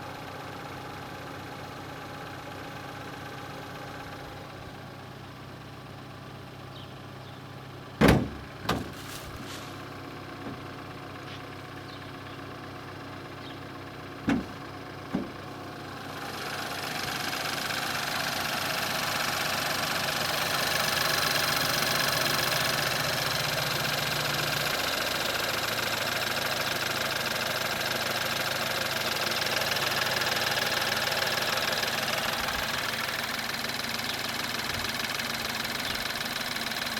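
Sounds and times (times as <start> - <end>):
car engine idling with clatter: 0.0 - 36.9
sharp engine knocks: 8.0 - 9.7, 10.4 - 10.8, 14.2 - 15.6.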